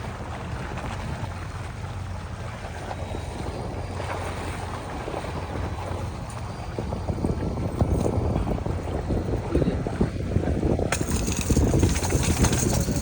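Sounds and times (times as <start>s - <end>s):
wind buffeting microphone: 3.3s - 13.0s.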